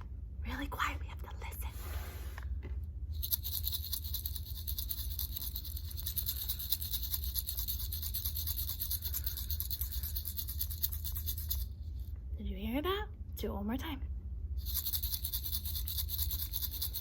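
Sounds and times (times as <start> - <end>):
sequins rattling in a tube: 3.2 - 12.1, 14.6 - 17.0.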